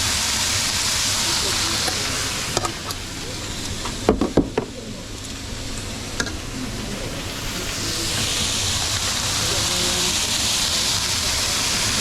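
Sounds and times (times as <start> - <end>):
food sizzling in a pan: 0.0 - 4.1, 4.7 - 12.0
knocks: 4.1 - 4.7.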